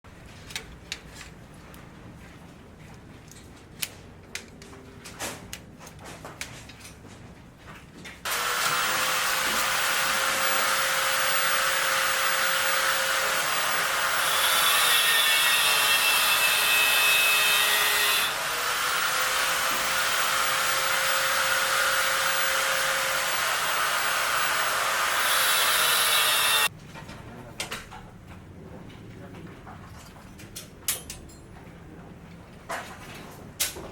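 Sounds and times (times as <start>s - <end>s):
electric power cutting tool: 8.3s - 26.7s.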